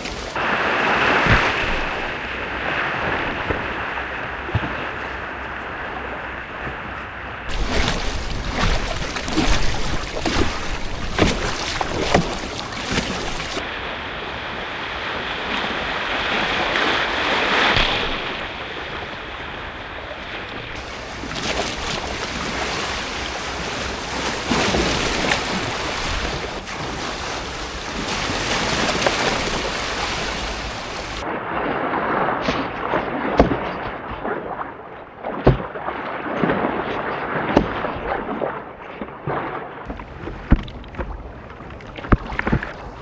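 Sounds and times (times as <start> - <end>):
sharp water splashes: 0.0 - 2.2, 7.5 - 13.6, 20.8 - 31.2
rough sea waves washing: 0.0 - 4.4, 7.5 - 31.3
wind: 0.0 - 43.0.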